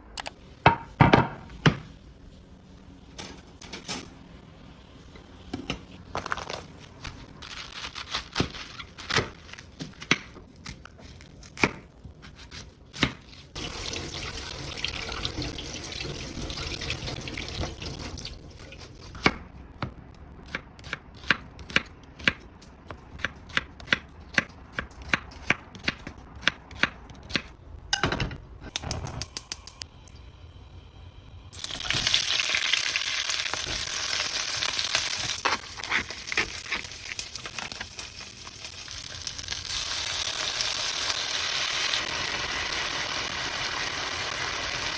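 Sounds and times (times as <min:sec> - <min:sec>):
water running from tap: 0:13.6 - 0:18.9.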